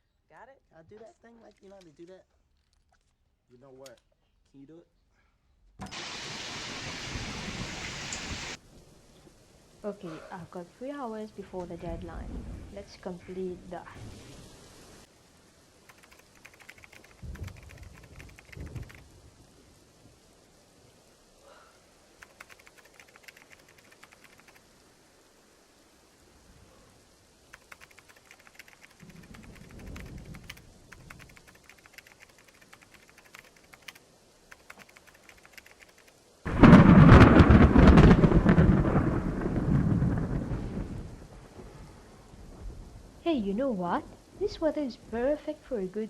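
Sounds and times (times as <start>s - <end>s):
faint thunder rumble: 5.9s - 15.1s, 15.9s - 32.6s, 36.4s - 45.9s
typing on computer keyboard: 15.9s - 19.0s, 22.2s - 24.6s, 27.5s - 36.1s
loud thunderclap: 17.1s - 19.0s, 36.5s - 43.0s.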